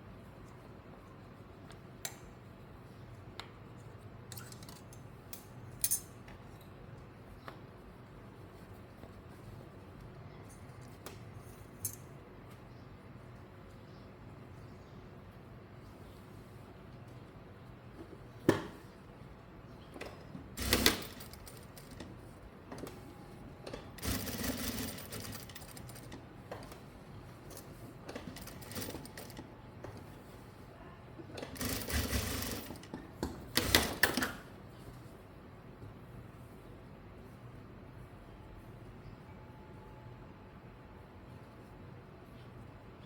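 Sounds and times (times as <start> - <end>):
sewing machine stitching: 20.6 - 22.1, 23.9 - 26.2, 28.2 - 29.4, 31.4 - 32.9, 33.5 - 34.3.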